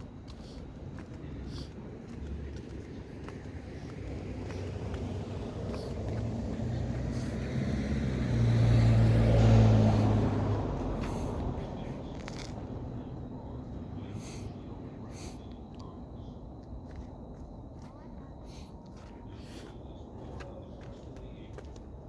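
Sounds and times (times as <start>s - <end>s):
road vehicle driving past: 0.0s - 16.1s.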